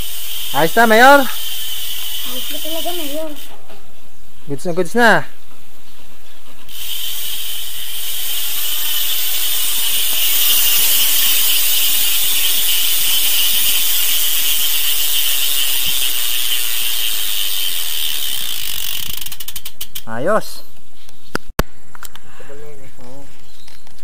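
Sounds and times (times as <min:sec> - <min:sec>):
bicycle hub ratchet buzzing: 0:00.0 - 0:03.6, 0:06.7 - 0:20.1.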